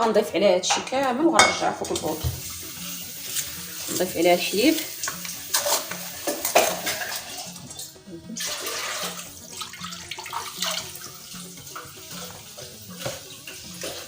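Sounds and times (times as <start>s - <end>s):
milk pouring and splashing into pot: 4.8s - 14.0s.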